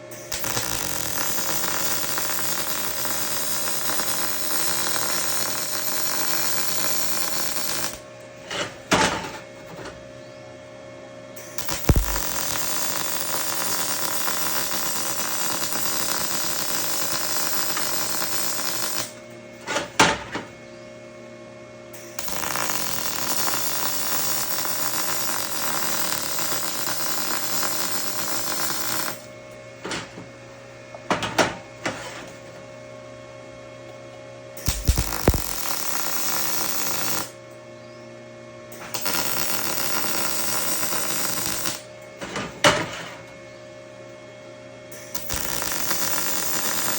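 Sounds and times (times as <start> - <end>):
welder arc crackling: 0.1 - 8.0, 11.4 - 19.2, 22.2 - 29.2, 34.6 - 37.4, 38.8 - 41.9, 45.0 - 46.9.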